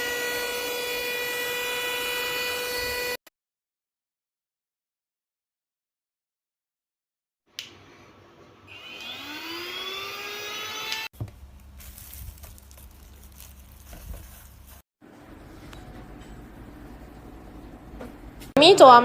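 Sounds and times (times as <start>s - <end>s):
handheld vacuum motor whining: 0.0s - 3.2s, 8.7s - 11.1s.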